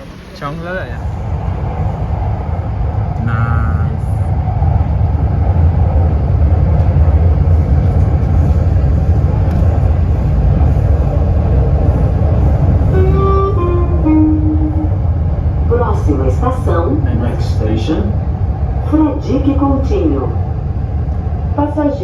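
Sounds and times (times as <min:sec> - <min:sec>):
metro train rumbling: 0:00.0 - 0:22.0.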